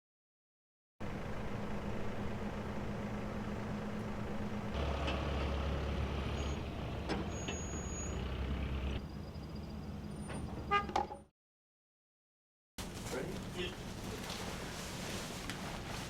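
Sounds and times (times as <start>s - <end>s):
engine running: 1.0s - 10.6s.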